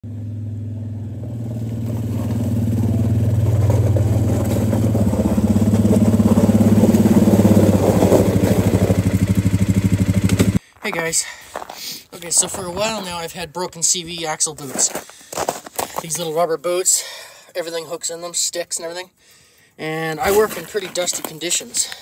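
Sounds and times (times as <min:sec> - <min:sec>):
atv engine running: 0:00.0 - 0:10.6.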